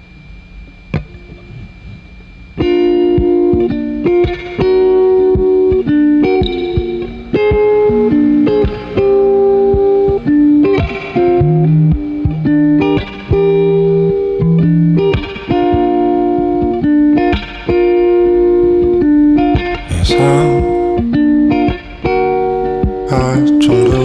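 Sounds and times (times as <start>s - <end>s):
guitar picking notes and chords: 2.5s - 19.4s.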